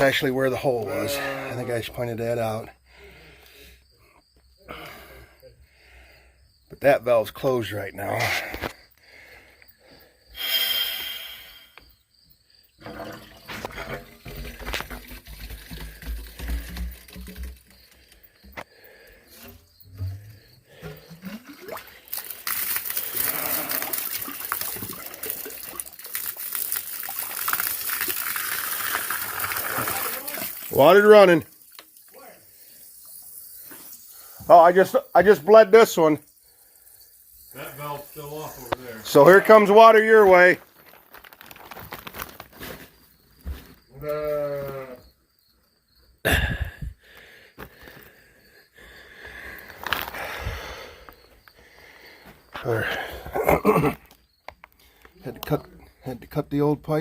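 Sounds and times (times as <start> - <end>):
water rushing from hydrant: 21.1 - 32.3
rustling handling noise: 40.6 - 43.7.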